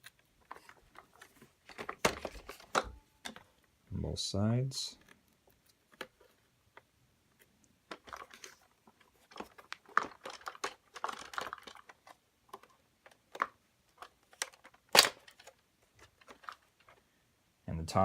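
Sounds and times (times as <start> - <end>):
plastic clicking and creaking: 0.0 - 3.6, 5.0 - 17.0
plastic snapping: 9.3 - 15.6.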